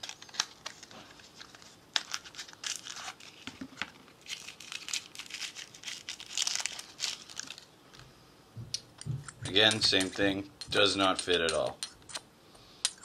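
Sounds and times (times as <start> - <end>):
packaging crinkling and tearing: 0.0 - 7.7.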